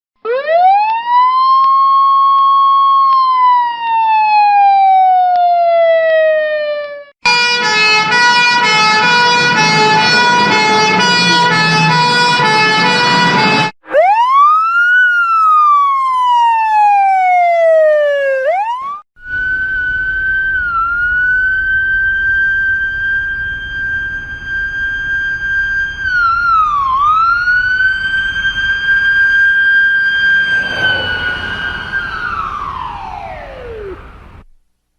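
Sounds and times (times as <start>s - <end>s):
ambulance siren: 0.2s - 34.4s
low rumble: 30.2s - 34.5s.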